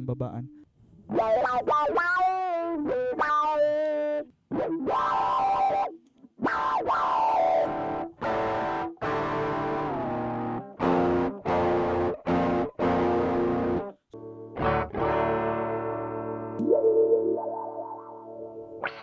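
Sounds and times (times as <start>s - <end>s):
overdriven electric guitar: 1.0s - 19.0s.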